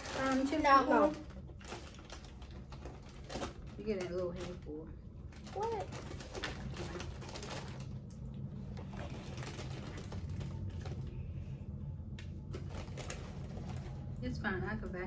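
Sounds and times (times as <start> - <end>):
chips crackling: 0.0 - 3.7
chip bag crinkling and rustling: 0.0 - 11.2, 12.5 - 14.2
steady low hum: 0.0 - 15.0.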